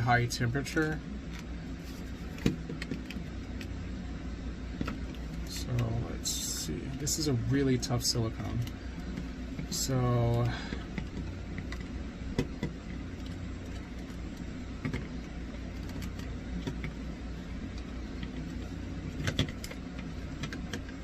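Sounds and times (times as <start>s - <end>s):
low background hum: 0.0s - 21.0s
handling clicks and knocks: 19.1s - 21.0s.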